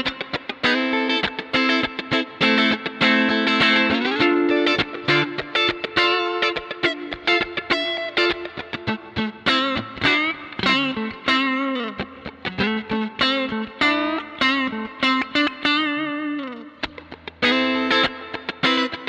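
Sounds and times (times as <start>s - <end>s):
electric guitar with pitch dips: 0.0s - 19.0s.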